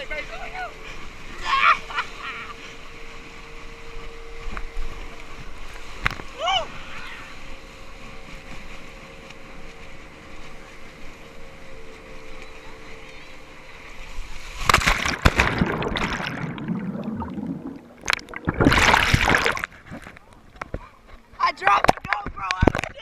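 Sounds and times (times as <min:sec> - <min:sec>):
faint motorboat engine hum: 0:00.0 - 0:23.0
water and wind rushing: 0:00.0 - 0:23.0
loud water splashing: 0:14.4 - 0:20.0.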